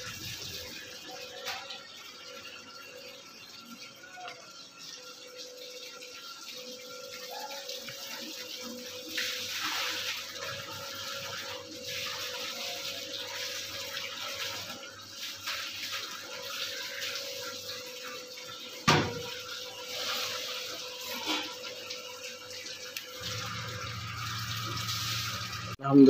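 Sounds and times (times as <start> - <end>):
water running and splashing: 0.0 - 26.0
machine hum: 16.0 - 26.0.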